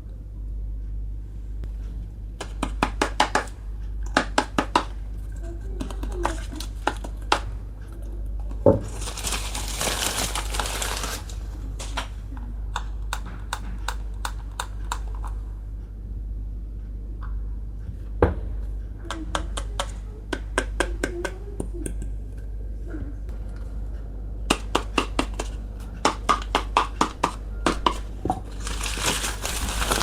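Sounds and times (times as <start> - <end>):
steady low hum: 0.0 - 30.0
plastic packaging crinkling: 8.7 - 12.2, 27.8 - 30.0.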